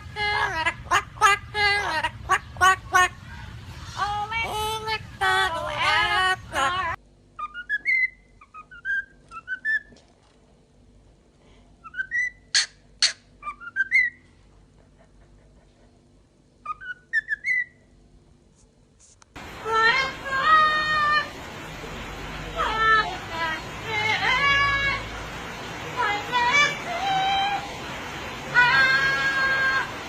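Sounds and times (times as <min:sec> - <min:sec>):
parrot whistling: 0:07.4 - 0:09.9, 0:11.8 - 0:14.3, 0:16.6 - 0:17.9
voice-like singing call: 0:22.4 - 0:25.2, 0:28.4 - 0:30.0.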